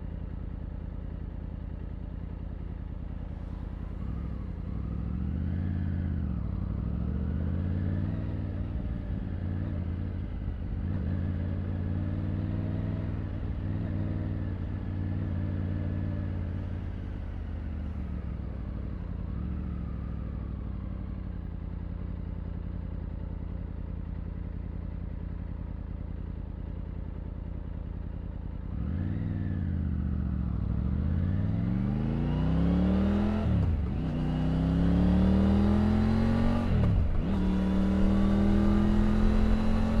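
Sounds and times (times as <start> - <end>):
motorcycle engine revving through gears: 3.4 - 16.7, 28.6 - 40.0.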